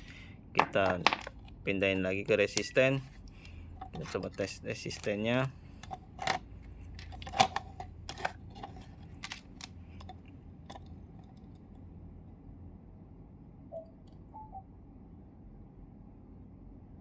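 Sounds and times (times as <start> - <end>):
multimeter probes clicking and tapping: 0.0 - 1.6, 2.4 - 11.5
faint low hum: 0.0 - 17.0.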